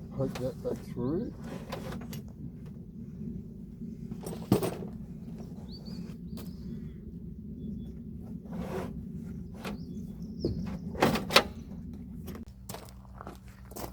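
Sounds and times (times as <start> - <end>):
steady low hum: 0.0 - 13.9
knocks and scrapes of handled parts: 0.2 - 2.8, 4.1 - 6.6.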